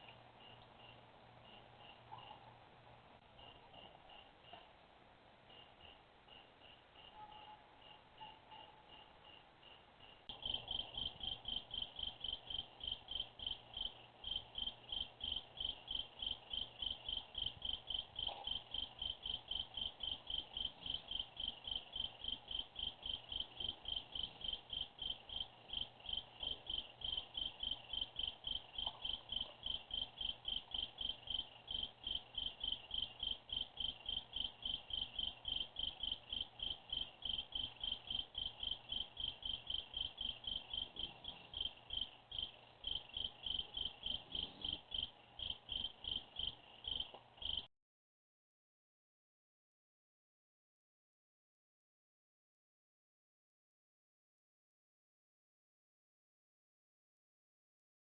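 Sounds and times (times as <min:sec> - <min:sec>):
crickets chirping: 0:00.0 - 0:02.5, 0:03.4 - 0:04.7, 0:05.5 - 0:47.7.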